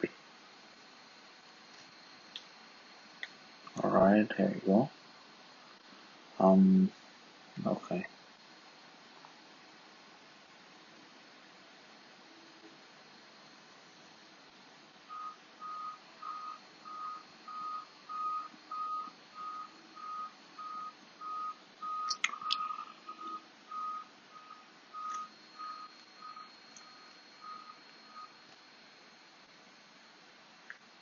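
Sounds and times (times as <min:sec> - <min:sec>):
repeating electronic beep: 0:15.1 - 0:28.4
sharp clicks: 0:22.0 - 0:22.8.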